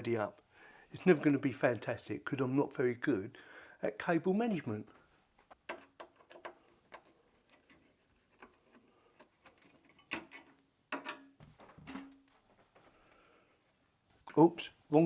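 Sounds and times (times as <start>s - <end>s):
hardware clicking and knocking: 5.5s - 12.5s.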